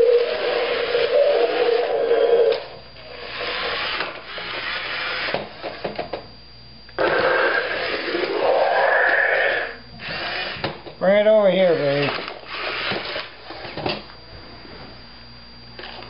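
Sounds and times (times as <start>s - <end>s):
steady high electronic tone: 0.0s - 5.3s, 6.9s - 12.8s
toy electronic buzzing: 0.0s - 6.2s, 6.9s - 14.1s.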